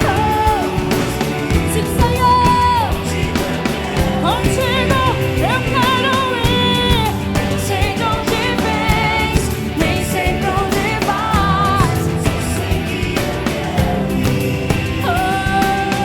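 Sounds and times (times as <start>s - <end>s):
drums: 0.0s - 16.0s
worship band playing: 0.0s - 16.0s.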